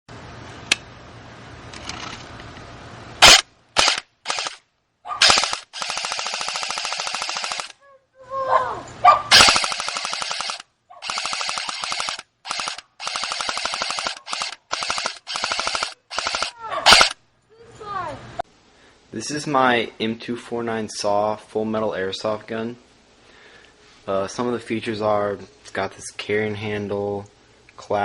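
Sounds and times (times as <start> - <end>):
airsoft gun firing full auto: 3.2 - 4.6, 5.2 - 7.8, 9.3 - 17.2.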